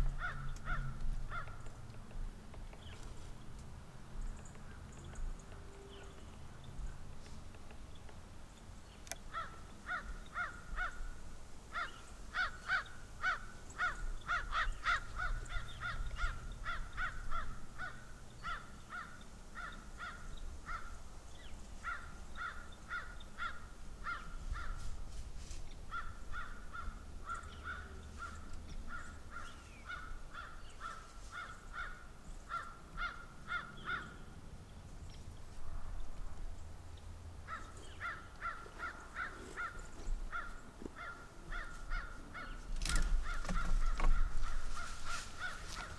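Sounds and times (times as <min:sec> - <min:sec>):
crows cawing: 0:00.0 - 0:01.8, 0:09.3 - 0:21.0, 0:21.8 - 0:24.9, 0:25.9 - 0:34.2, 0:37.4 - 0:45.9.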